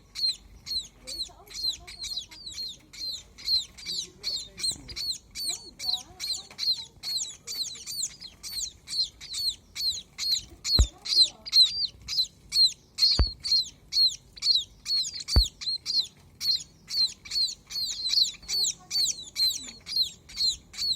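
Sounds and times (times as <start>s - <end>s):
baby birds cheeping: 0.0s - 20.9s
low thumps: 13.2s - 13.4s.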